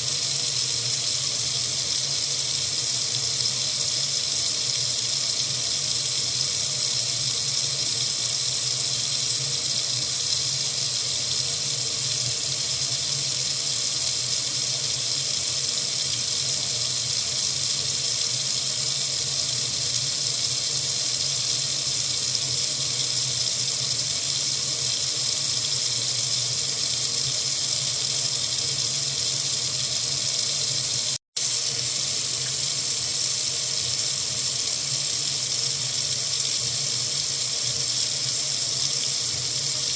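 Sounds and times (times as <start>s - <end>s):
faucet running into sink: 0.0s - 39.9s.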